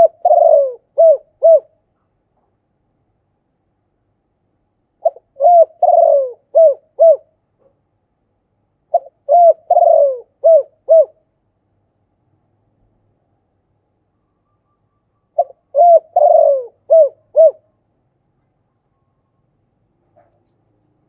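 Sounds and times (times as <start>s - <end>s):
dove cooing: 0.0s - 1.8s, 5.0s - 7.3s, 8.9s - 11.2s, 15.4s - 17.7s.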